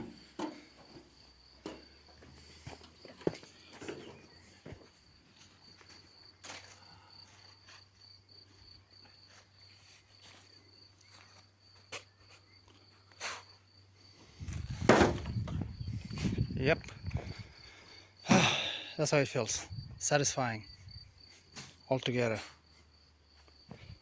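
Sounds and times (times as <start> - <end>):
cricket trill: 0.0 - 24.0.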